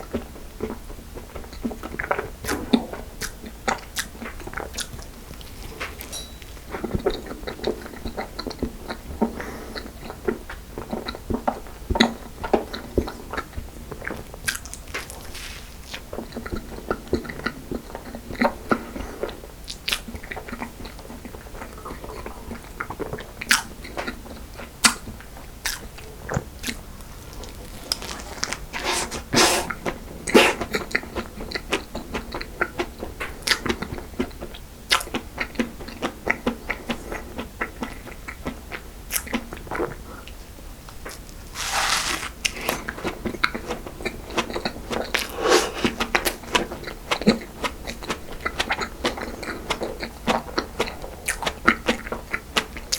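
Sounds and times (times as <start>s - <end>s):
wet chewing: 25.6s - 34.3s, 41.6s - 52.4s
pastry crunching: 26.6s - 29.8s, 41.1s - 42.9s.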